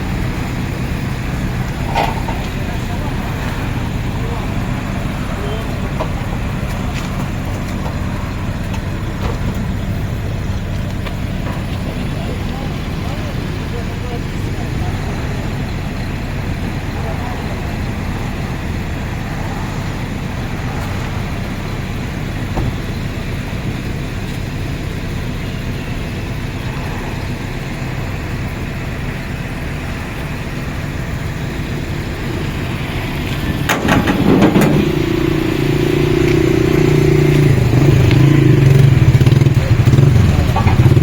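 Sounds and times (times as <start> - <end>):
vehicle engine rumbling: 0.0 - 41.0
clatter of knocks: 33.7 - 35.2.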